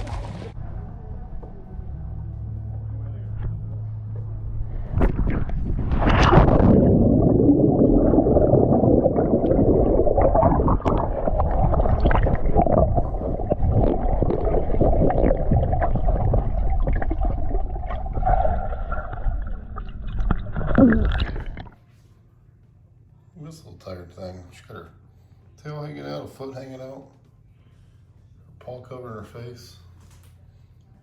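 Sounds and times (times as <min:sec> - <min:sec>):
muffled underwater rush: 0:04.5 - 0:21.8
water splash: 0:04.9 - 0:21.8.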